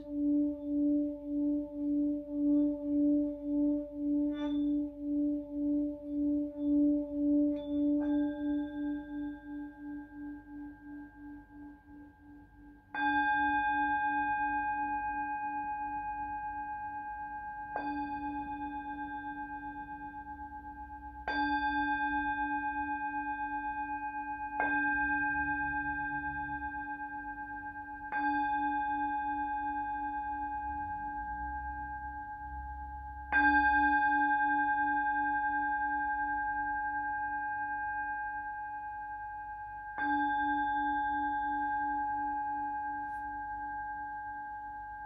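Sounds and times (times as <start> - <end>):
singing bowl humming: 0.0 - 45.0
singing bowl strikes ringing: 0.0 - 45.0.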